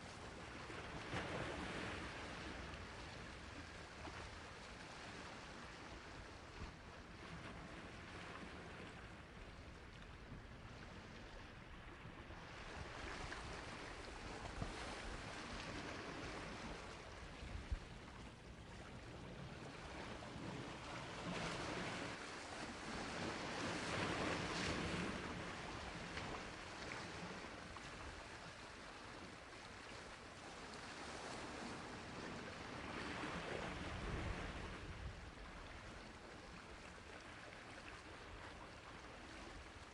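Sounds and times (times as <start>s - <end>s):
sea waves on shore: 0.0s - 39.9s.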